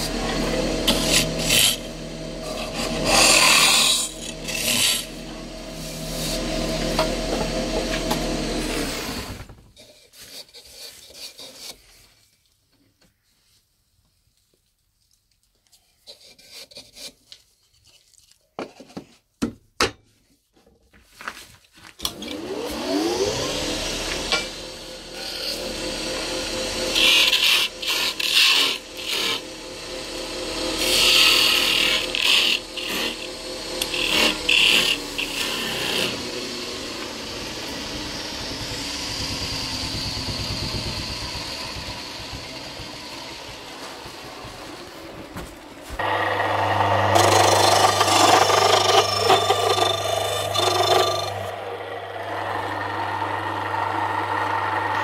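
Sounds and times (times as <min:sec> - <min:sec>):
wood lathe motor spinning: 0:00.0 - 0:09.6, 0:22.0 - 0:55.0
turning tool scraping wood: 0:00.0 - 0:12.0, 0:16.0 - 0:18.4, 0:23.3 - 0:37.9, 0:39.7 - 0:55.0.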